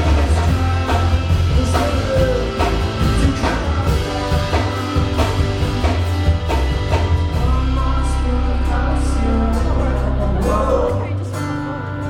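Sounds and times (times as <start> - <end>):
drum kit hits: 0.0 - 8.1
live rock band playing: 0.0 - 12.0.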